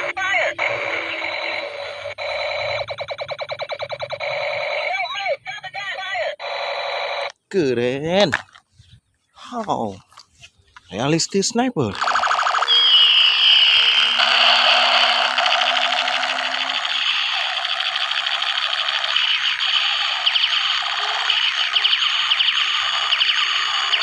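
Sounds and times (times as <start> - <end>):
toy gun rattling pulses: 12.0 - 24.0
toy gun zap tone: 12.0 - 24.0.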